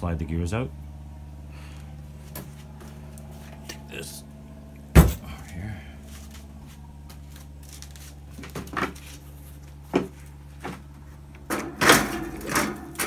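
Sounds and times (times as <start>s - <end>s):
steady low hum: 0.0s - 13.0s
metal parts knocking and clunking: 11.5s - 13.0s.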